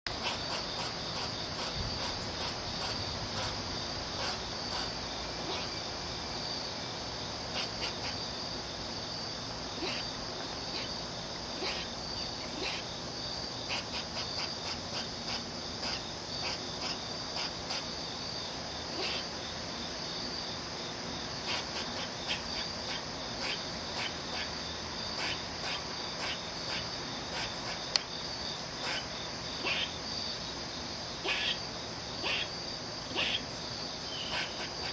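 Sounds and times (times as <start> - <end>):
squirrel alarm calls: 0.1 - 5.8, 7.5 - 8.3, 9.8 - 12.9, 13.6 - 18.0, 18.9 - 19.3, 21.4 - 28.0, 28.7 - 30.0, 31.2 - 34.9.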